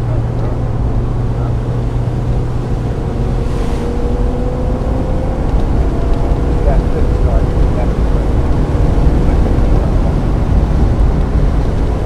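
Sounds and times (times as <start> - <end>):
car engine running under load: 0.0 - 12.0
brief hiss: 3.4 - 4.2.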